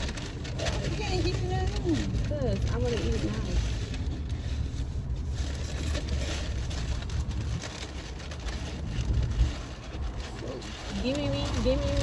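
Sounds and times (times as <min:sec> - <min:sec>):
faint crackling noise: 0:00.0 - 0:12.0.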